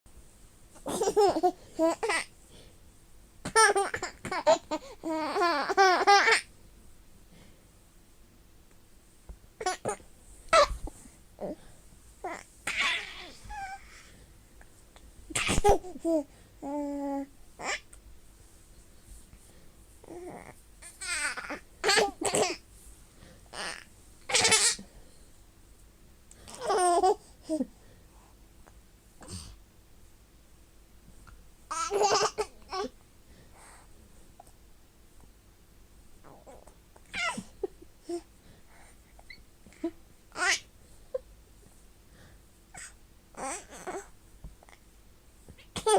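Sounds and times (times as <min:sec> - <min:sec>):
baby laughing: 0:00.8 - 0:02.3, 0:03.5 - 0:06.5, 0:12.3 - 0:13.8, 0:20.8 - 0:22.6, 0:23.6 - 0:24.8, 0:31.7 - 0:32.9, 0:37.1 - 0:38.2.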